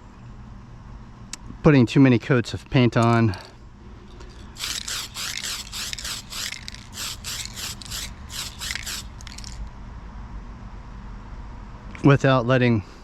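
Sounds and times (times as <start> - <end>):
spray can spraying: 4.5 - 9.6.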